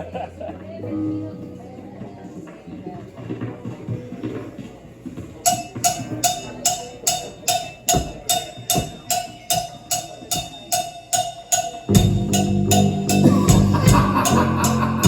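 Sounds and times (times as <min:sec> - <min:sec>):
woody percussion knocking beat: 0:05.5 - 0:15.0
bass drum hits: 0:11.9 - 0:15.0.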